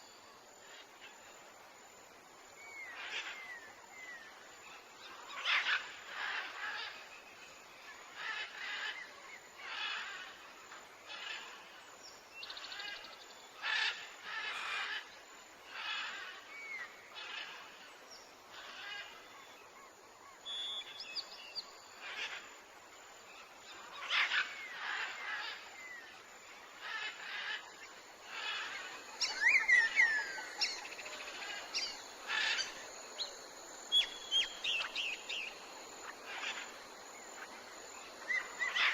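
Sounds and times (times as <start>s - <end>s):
whistled bird chirps: 20.4s - 21.6s.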